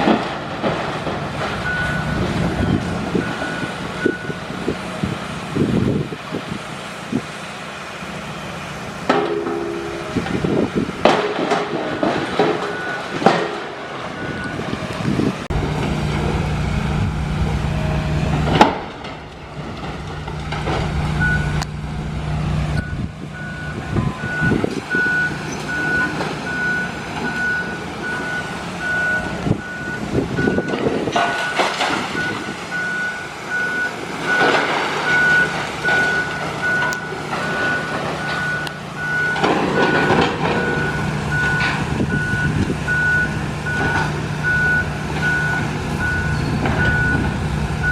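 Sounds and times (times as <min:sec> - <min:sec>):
demolition debris crashing: 0:00.0 - 0:04.7, 0:09.1 - 0:14.3, 0:15.5 - 0:22.8, 0:23.4 - 0:47.9
diesel engine running: 0:00.0 - 0:47.9
reversing alarm beeping: 0:01.6 - 0:04.4, 0:12.6 - 0:13.2, 0:14.2 - 0:14.7, 0:21.2 - 0:21.7, 0:22.7 - 0:47.9.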